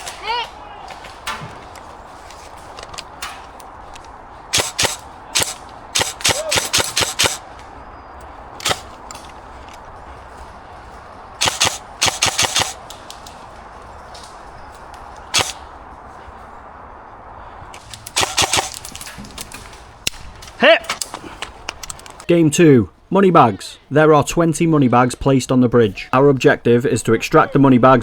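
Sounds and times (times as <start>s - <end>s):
airsoft guns firing: 4.4s - 9.9s, 11.4s - 13.6s, 15.2s - 15.8s, 17.8s - 21.1s.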